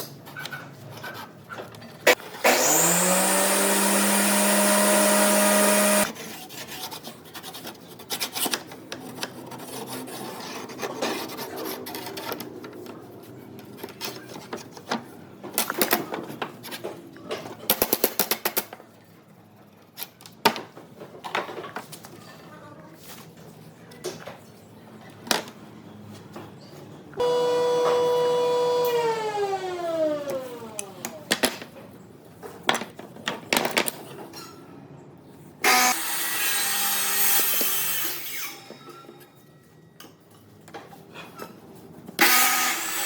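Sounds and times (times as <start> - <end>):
power tool motor running: 2.4 - 6.1, 27.2 - 31.2.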